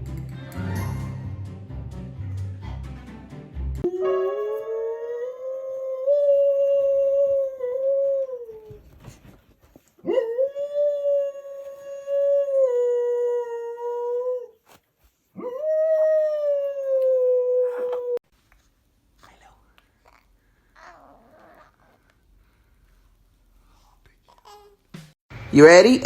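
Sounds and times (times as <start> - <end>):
dog howling: 3.8 - 8.7.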